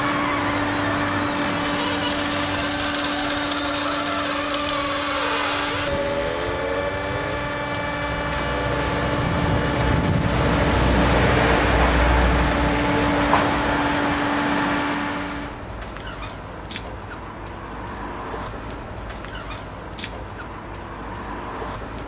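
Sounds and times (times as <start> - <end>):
baler machine hum: 0.0 - 15.8
heavy low rumble: 0.0 - 15.8
sharp click: 15.8 - 17.0, 17.8 - 20.3.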